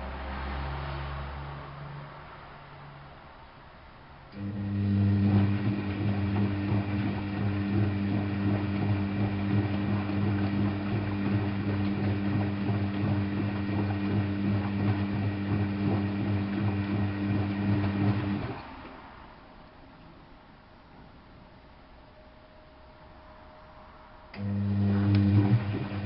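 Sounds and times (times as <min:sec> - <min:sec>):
washing machine drain pump humming: 0:04.3 - 0:19.1, 0:24.3 - 0:26.0
water churning: 0:05.3 - 0:19.2.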